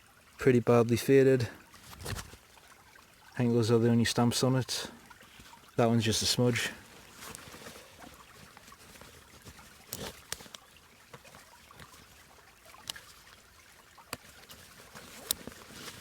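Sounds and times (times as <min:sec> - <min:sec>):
stream trickling: 0:00.0 - 0:16.0
canvas bag clicks and rustles: 0:01.9 - 0:02.4, 0:07.0 - 0:12.1, 0:14.1 - 0:16.0.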